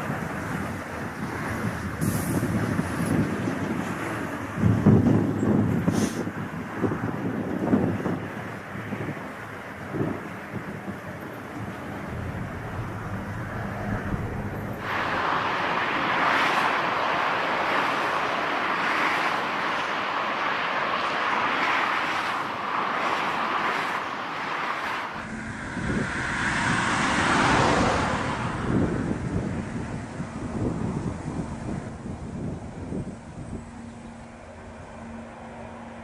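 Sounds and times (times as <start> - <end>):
wind buffeting microphone: 0.0 - 35.3
jet airliner landing: 9.8 - 36.0.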